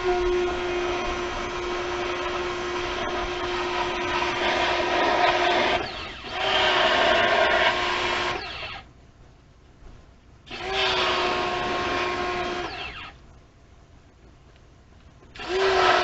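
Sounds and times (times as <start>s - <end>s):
power tool motor running: 0.0s - 8.8s, 10.5s - 13.2s, 15.4s - 16.0s.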